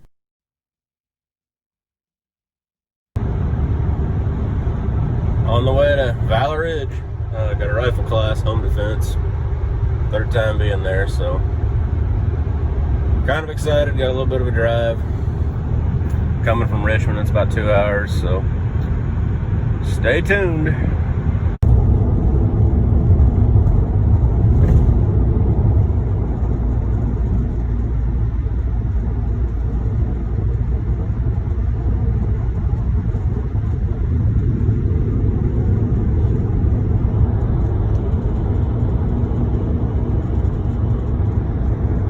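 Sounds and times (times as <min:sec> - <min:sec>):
car road rumble from inside: 0:03.2 - 0:42.0.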